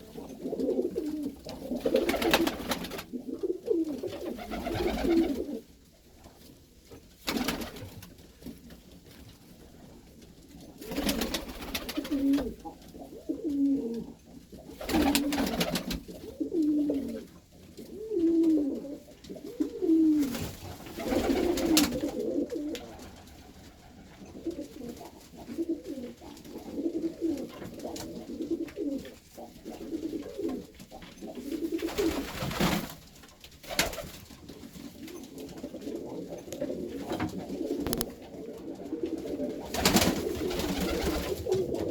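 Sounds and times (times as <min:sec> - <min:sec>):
pigeons cooing: 0:00.0 - 0:05.7, 0:10.7 - 0:32.5, 0:35.0 - 0:41.9.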